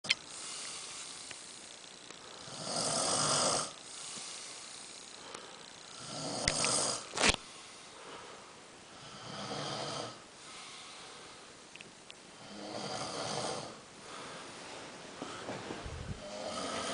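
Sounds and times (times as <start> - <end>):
quiet breathing: 0.2 - 11.7, 12.3 - 16.9
person snoring loudly: 2.3 - 5.0, 5.9 - 7.1, 9.0 - 10.2, 12.4 - 13.8, 16.2 - 16.9.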